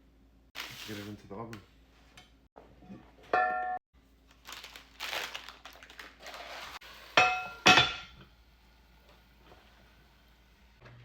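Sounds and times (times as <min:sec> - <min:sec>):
metal pot and lid clinking: 0:07.2 - 0:08.2.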